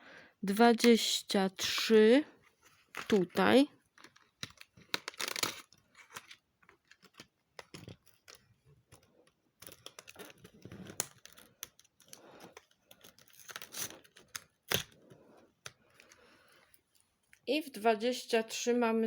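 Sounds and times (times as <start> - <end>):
cardboard tearing and crinkling: 4.3 - 7.2, 13.0 - 15.0.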